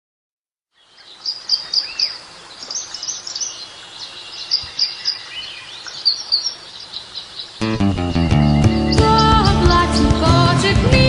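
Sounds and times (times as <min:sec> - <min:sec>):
birds singing: 0:00.7 - 0:11.0
steady background hiss: 0:00.8 - 0:07.8.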